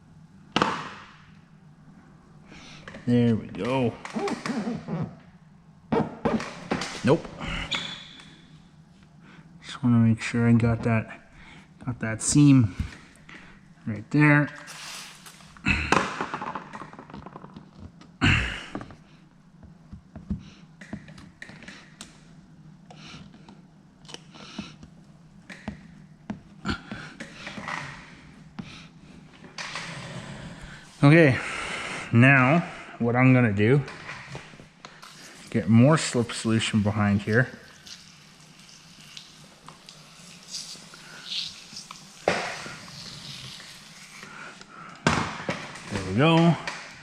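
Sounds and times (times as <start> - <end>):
steady low hum: 0.0 - 47.0
spray bottle spritzes: 37.7 - 44.2.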